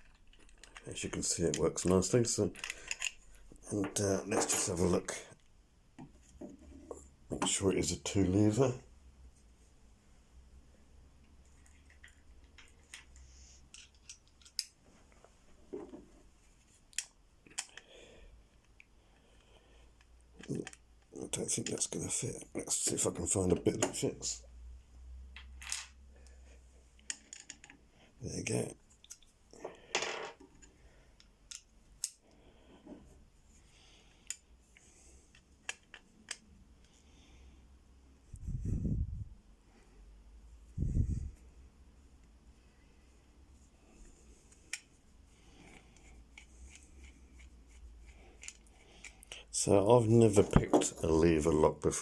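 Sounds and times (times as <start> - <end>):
metal parts clicking: 0.0 - 3.3, 13.7 - 14.8
metal parts scraping: 2.5 - 3.2.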